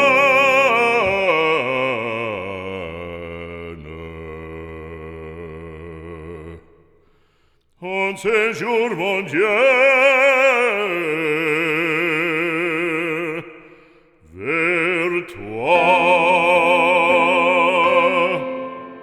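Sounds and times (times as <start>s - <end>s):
operatic singing with vibrato: 0.0s - 3.7s, 14.4s - 19.0s.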